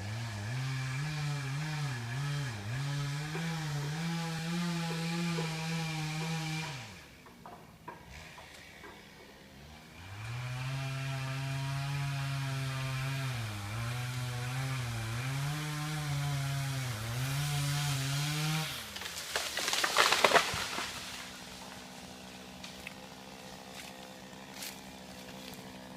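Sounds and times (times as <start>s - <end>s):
chainsaw revving: 0.0s - 7.2s, 7.9s - 25.9s.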